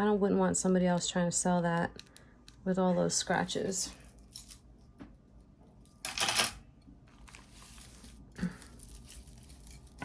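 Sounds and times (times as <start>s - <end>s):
metal jewelry clinking: 3.3s - 4.7s, 5.7s - 6.6s, 7.3s - 10.0s.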